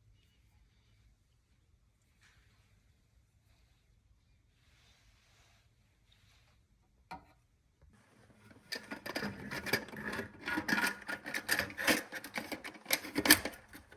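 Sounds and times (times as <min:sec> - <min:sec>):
rapid clicking and scraping: 0:08.4 - 0:13.9
plastic parts clicking: 0:08.5 - 0:13.9.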